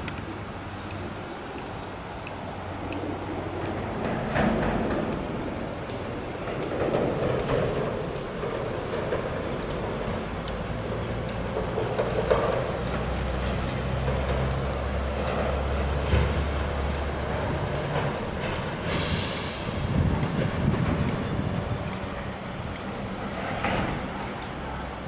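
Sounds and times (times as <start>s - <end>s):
low engine hum: 8.5s - 18.8s.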